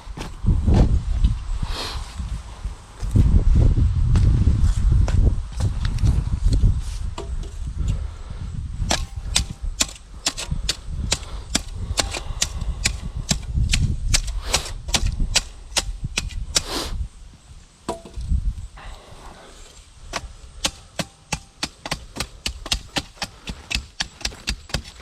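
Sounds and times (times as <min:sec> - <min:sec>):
hand tool strikes: 0:20.1 - 0:25.0.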